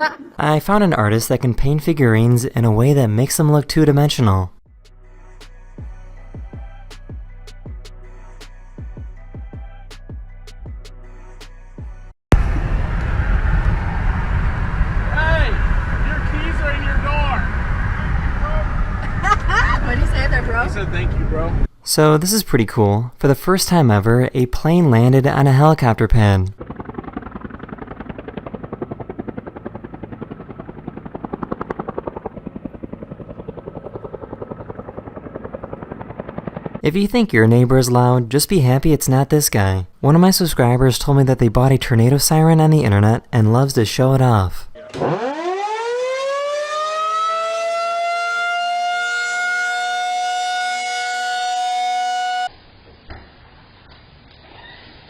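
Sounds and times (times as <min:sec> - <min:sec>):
warning siren wailing: 0:12.4 - 0:19.2, 0:44.8 - 0:52.5
helicopter rotor chopping: 0:12.4 - 0:21.7, 0:23.9 - 0:38.3, 0:44.8 - 0:52.4.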